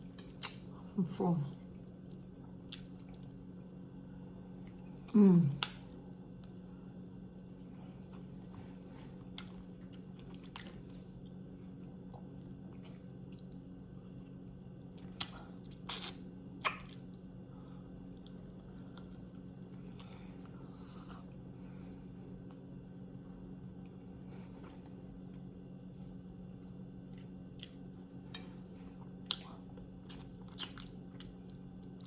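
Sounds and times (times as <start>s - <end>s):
steady low hum: 0.0s - 32.0s
wet mouth clicks and smacks: 0.4s - 0.6s.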